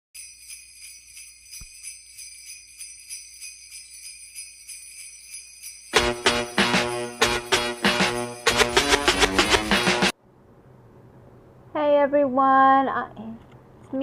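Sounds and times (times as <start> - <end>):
steady shaking of sleigh chimes: 0.2 - 10.1
loud intro music: 6.0 - 10.2.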